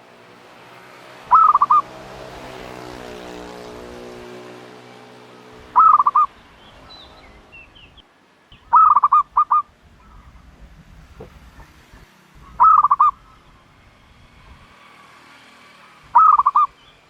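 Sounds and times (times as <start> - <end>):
faint bird chirps: 1.3 - 1.8, 5.8 - 10.5, 12.4 - 13.6, 16.2 - 17.0
dove calling: 1.3 - 2.0, 5.6 - 13.8, 16.1 - 17.0.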